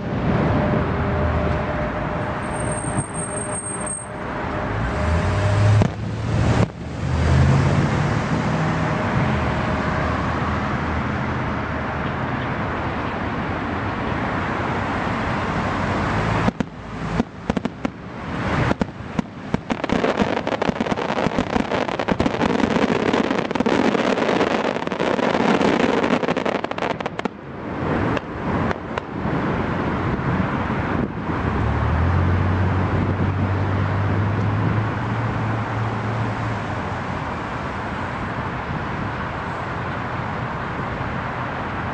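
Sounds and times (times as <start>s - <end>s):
fireworks bangs and crackles: 5.1s - 7.0s, 16.3s - 31.2s.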